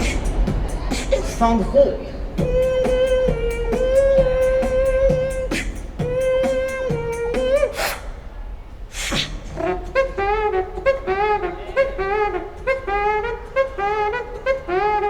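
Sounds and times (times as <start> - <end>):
hissing snare-like burst: 0.0 - 1.6, 2.4 - 8.2, 8.9 - 9.5
beatboxed kick drum: 0.0 - 8.0
beatboxed clicking hi-hat: 0.0 - 8.2, 9.0 - 10.2
beatboxing hummed note: 0.0 - 8.2, 8.9 - 15.0.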